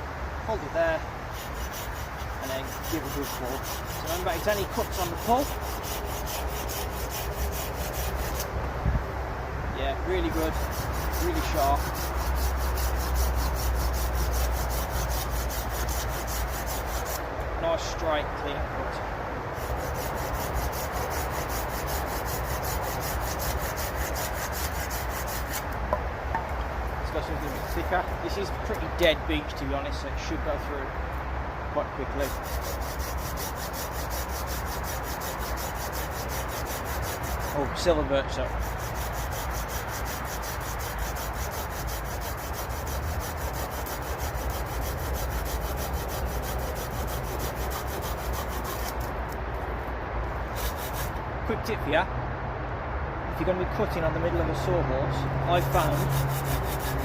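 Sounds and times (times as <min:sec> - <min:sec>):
pull saw cutting through stick: 0:01.3 - 0:08.5, 0:10.0 - 0:17.2, 0:19.5 - 0:25.7, 0:27.1 - 0:29.6, 0:32.0 - 0:49.3, 0:50.4 - 0:51.2, 0:55.4 - 0:57.0.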